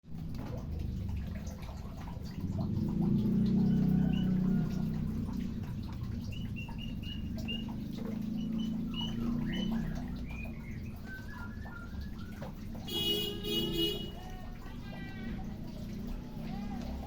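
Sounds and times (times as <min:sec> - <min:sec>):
birds chirping: 0:02.6 - 0:14.3.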